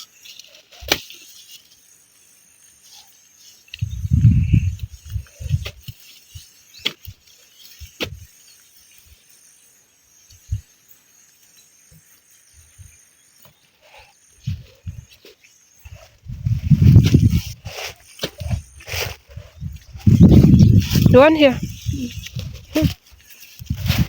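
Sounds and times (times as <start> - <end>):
insects hissing: 0.0 - 24.0
hoe digging into soil: 16.6 - 21.2.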